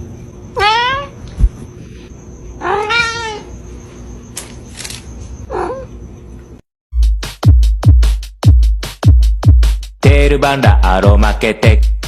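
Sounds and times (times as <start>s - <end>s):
cat meowing: 0.6s - 1.2s, 2.6s - 3.5s, 5.5s - 6.0s
electronic music with heavy beat: 7.0s - 12.0s.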